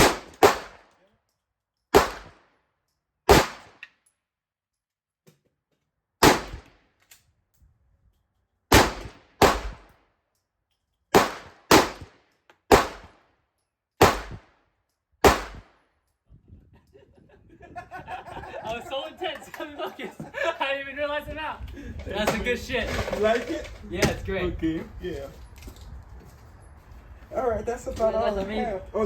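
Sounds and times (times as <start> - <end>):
handgun shots: 0.0 - 0.8, 1.9 - 2.4, 3.3 - 3.9, 6.2 - 6.7, 8.7 - 9.8, 11.1 - 12.1, 12.7 - 13.1, 14.0 - 14.5, 15.2 - 15.7.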